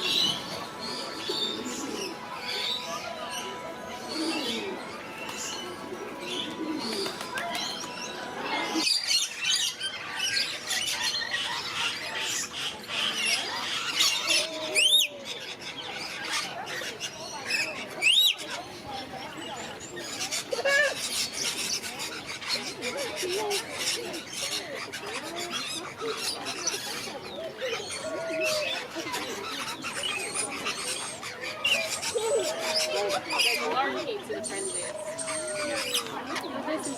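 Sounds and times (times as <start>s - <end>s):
parrots squawking and chirping: 20.0s - 36.9s.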